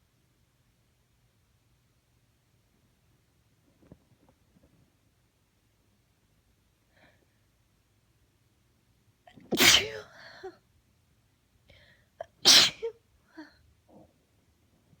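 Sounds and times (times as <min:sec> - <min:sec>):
woman sneezing: 0:09.4 - 0:10.2, 0:12.3 - 0:13.0
woman breathing: 0:11.7 - 0:12.2.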